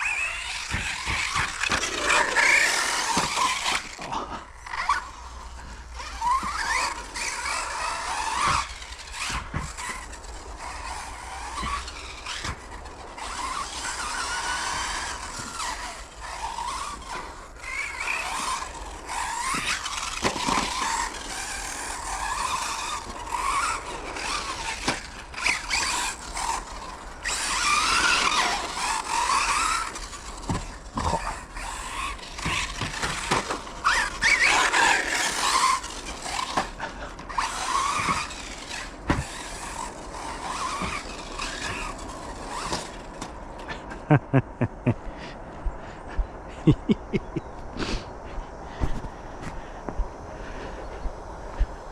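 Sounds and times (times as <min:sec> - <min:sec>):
rc car electric motor whining: 0:00.0 - 0:43.9.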